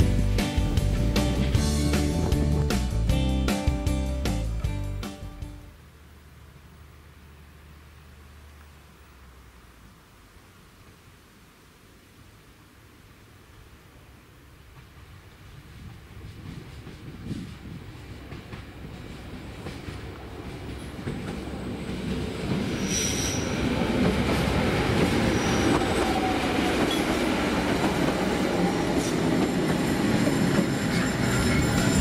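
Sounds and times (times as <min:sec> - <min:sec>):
train passing: 0:00.0 - 0:08.6, 0:14.5 - 0:32.0
wheels squealing on rails: 0:15.5 - 0:32.0.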